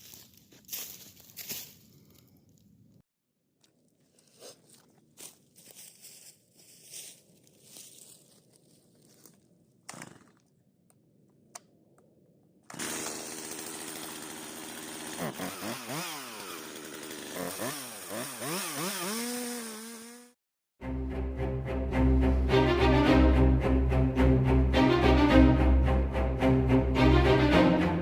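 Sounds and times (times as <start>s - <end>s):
chainsaw revving: 12.7s - 20.4s.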